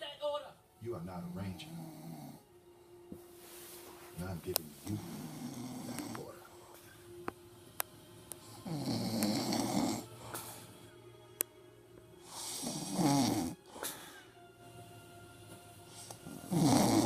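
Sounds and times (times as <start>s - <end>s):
person snoring: 1.4s - 2.5s, 4.8s - 6.8s, 8.4s - 10.7s, 12.2s - 14.2s, 15.9s - 17.0s.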